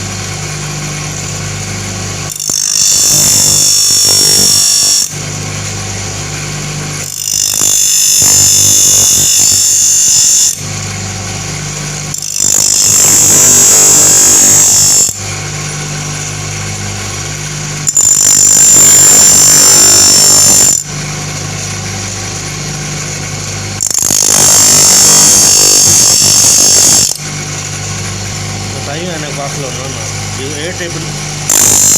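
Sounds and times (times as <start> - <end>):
grinder motor hum: 0.0 - 31.9
high-pitched grinding on blade: 2.3 - 5.2, 6.9 - 10.6, 11.8 - 15.3, 17.1 - 20.9, 22.3 - 31.9.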